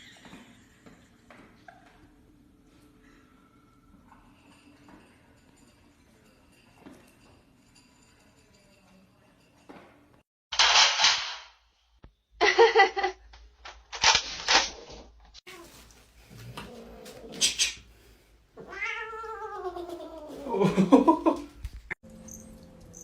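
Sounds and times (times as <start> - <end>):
cat yowling and meowing: 18.6 - 20.5.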